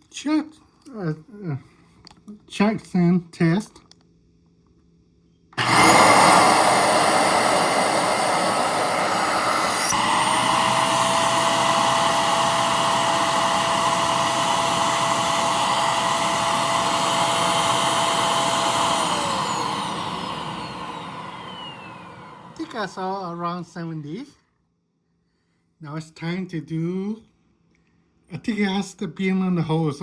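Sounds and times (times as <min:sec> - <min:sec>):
steady whine: 0:05.6 - 0:22.8
vacuum cleaner motor running: 0:05.6 - 0:23.2.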